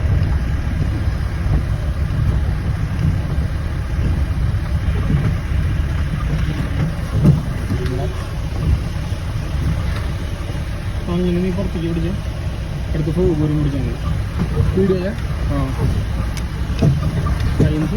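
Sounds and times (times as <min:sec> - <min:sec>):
vehicle engine rumbling: 0:00.0 - 0:17.9.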